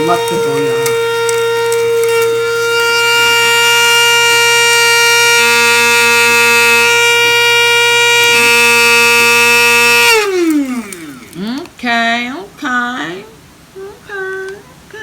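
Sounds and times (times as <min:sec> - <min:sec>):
electric grinder whining: 0:00.0 - 0:11.9.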